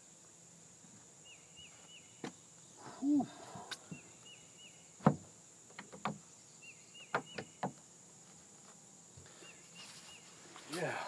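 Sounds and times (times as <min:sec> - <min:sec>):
sharp knocks and clicks: 0:05.0 - 0:06.2.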